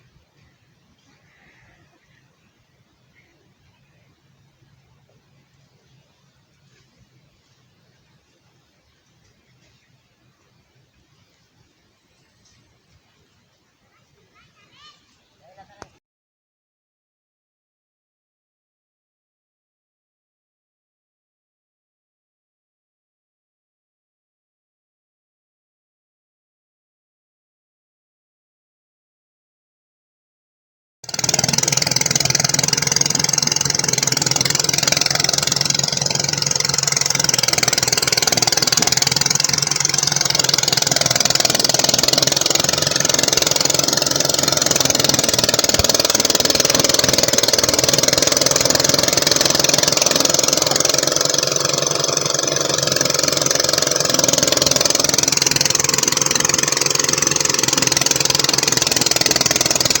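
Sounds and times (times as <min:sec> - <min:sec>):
small engine running: 0:31.0 - 1:00.0.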